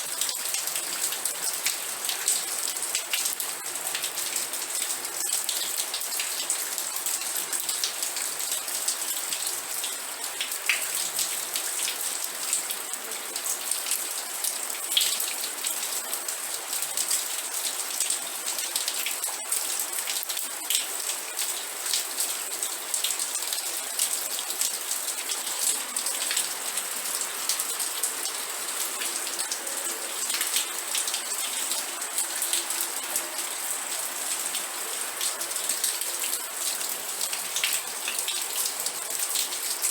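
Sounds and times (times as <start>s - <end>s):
raindrops pattering on surface: 0.0s - 39.9s
steady rain hiss: 19.8s - 39.9s.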